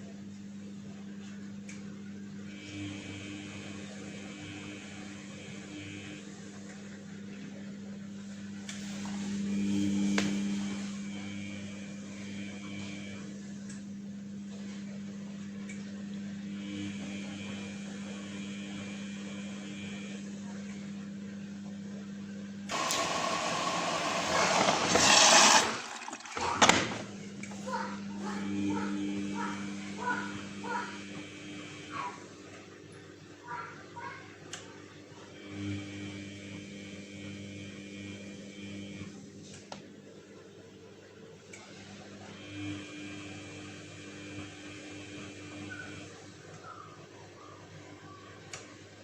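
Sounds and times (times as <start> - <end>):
washing machine motor hum: 0.0 - 49.0
washing machine drum whine: 22.7 - 32.5.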